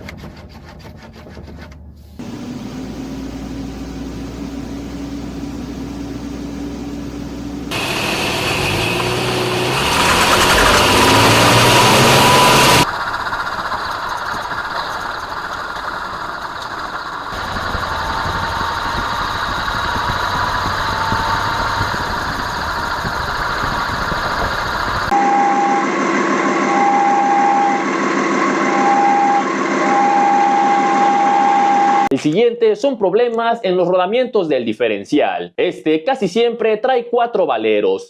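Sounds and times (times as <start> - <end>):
engine and driveline hum: 1.4 - 32.1
driveline whine: 2.2 - 32.1.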